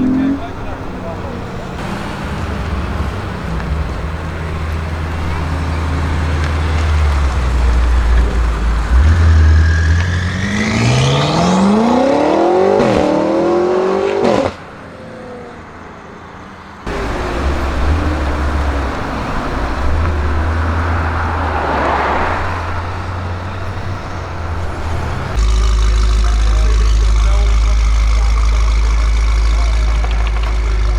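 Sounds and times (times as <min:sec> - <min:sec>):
car engine idling: 0:00.0 - 0:10.7, 0:16.9 - 0:30.9
car engine revving hard: 0:00.0 - 0:14.6, 0:16.9 - 0:30.9
exhaust cracks: 0:00.0 - 0:14.6, 0:16.9 - 0:30.9.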